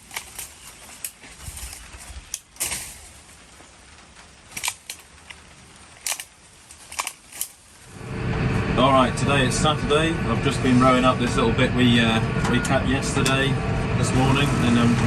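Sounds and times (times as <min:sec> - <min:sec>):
loppers snapping branches: 0:00.0 - 0:07.9
twigs and foliage crackling: 0:00.0 - 0:07.9.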